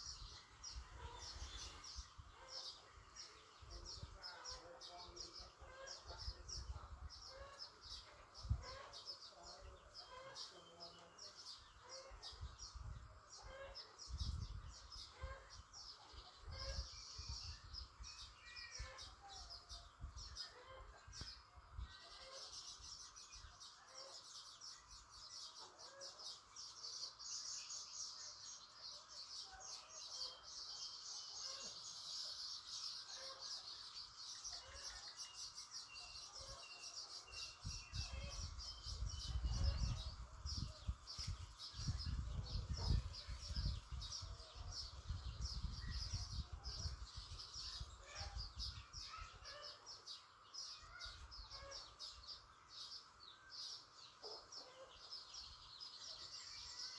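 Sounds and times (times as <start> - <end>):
birds chirping: 0.0 - 56.9.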